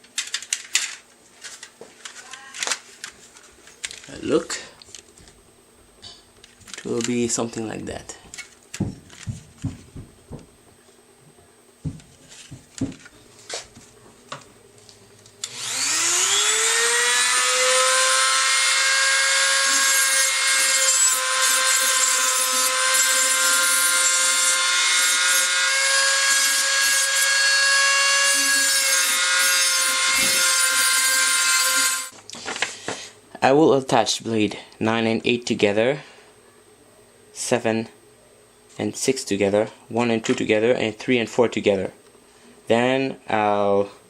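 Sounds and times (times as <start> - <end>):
high-speed rotary tool whine: 15.4 - 32.1.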